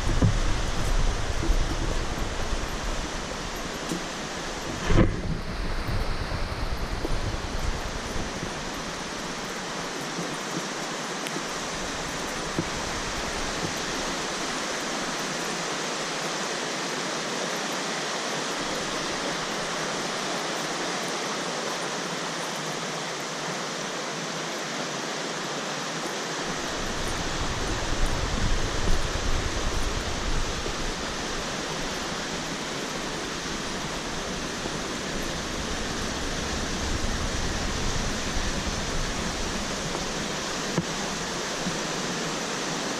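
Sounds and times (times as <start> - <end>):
wind buffeting microphone: 0.0 - 15.3, 26.4 - 42.6
running water rushing: 0.0 - 42.9.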